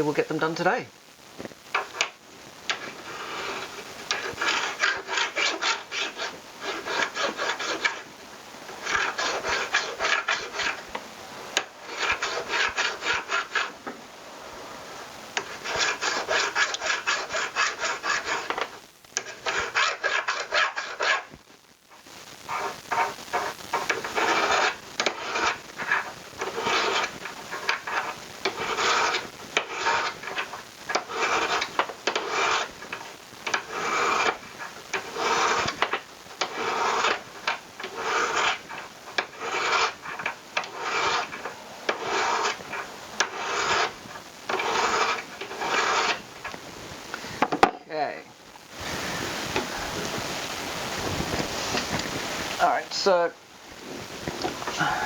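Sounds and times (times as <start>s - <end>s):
hand file rasping on metal: 2.7s - 8.0s, 8.8s - 10.8s, 11.8s - 13.8s, 15.4s - 21.2s, 22.6s - 46.2s.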